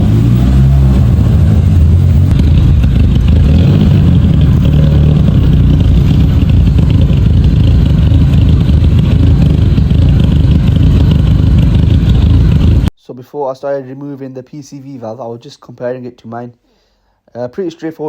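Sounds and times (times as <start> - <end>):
car engine idling unevenly: 0.0 - 12.9.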